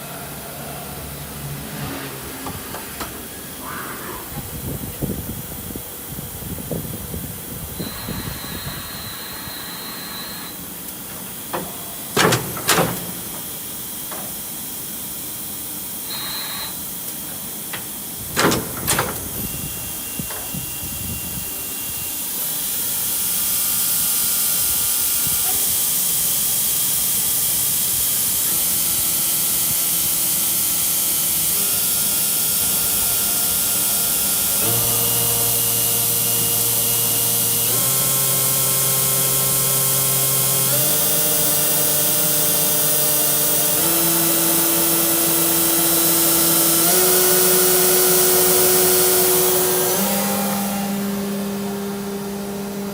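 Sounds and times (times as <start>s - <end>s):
machine hissing: 0.3s - 52.9s
sharp mechanical knocks: 11.4s - 14.4s, 17.7s - 19.5s.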